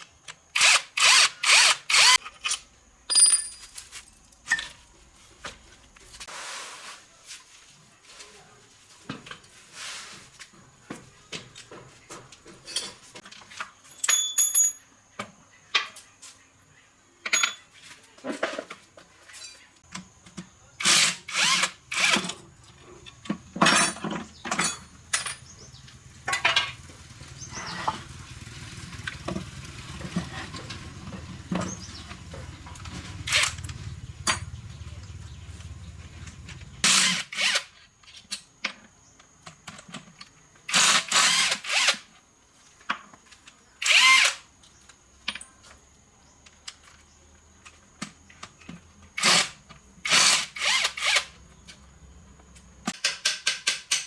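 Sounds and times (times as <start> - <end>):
small electric power tool running: 0.6 - 2.2, 20.8 - 22.2, 29.0 - 34.1, 35.6 - 37.6, 50.1 - 51.3.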